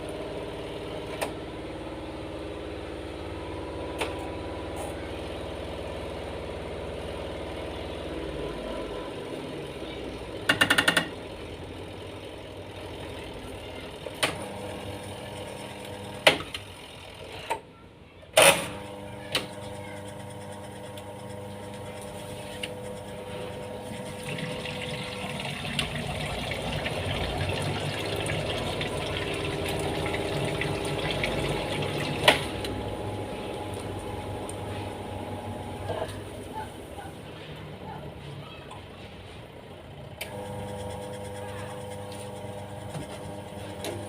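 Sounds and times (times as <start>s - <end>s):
washing machine motor hum: 0.0s - 17.3s, 18.6s - 44.0s
washing machine knocking: 10.4s - 11.2s, 23.9s - 34.4s.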